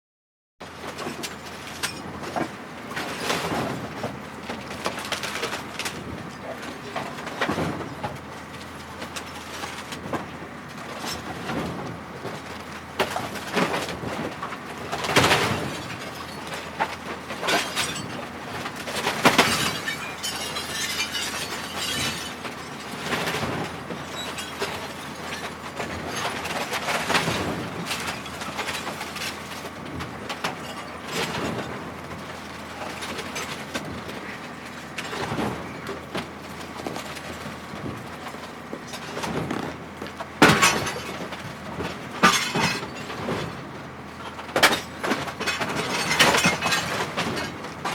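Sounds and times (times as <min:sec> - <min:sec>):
glass shattering: 0:17.4 - 0:18.2, 0:19.1 - 0:23.0, 0:24.1 - 0:25.5, 0:30.6 - 0:31.0, 0:40.4 - 0:41.2, 0:42.2 - 0:43.0, 0:44.7 - 0:47.5
glass fragments tinkling: 0:19.4 - 0:22.8.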